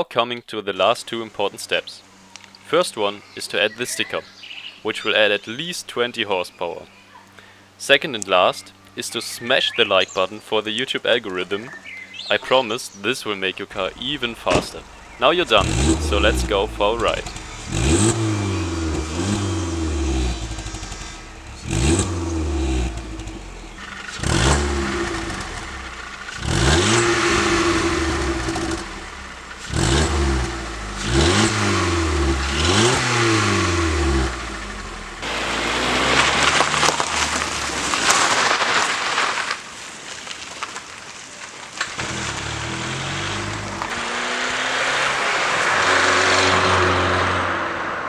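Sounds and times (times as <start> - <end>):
car engine revving: 13.6 - 38.6, 42.0 - 48.0
rushing noise: 13.7 - 39.4.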